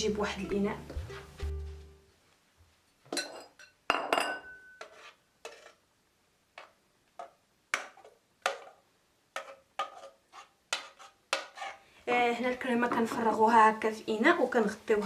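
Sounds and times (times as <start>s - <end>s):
bowl and utensil clinking: 3.1s - 4.9s.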